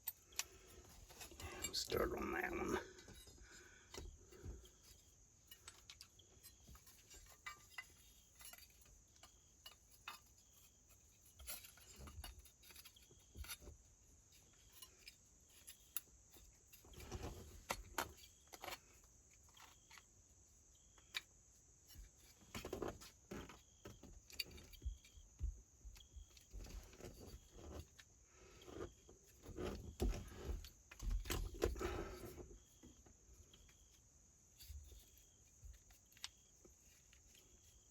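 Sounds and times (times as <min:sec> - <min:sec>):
metal parts and tools clinking: 0:00.0 - 0:20.1.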